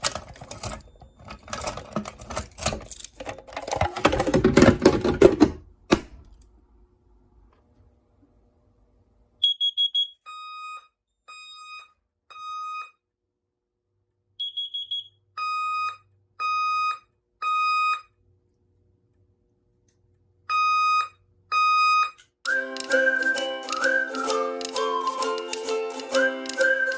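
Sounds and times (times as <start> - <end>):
fire alarm horn beeps: 9.4 - 12.9, 14.4 - 18.1
music: 22.5 - 26.9.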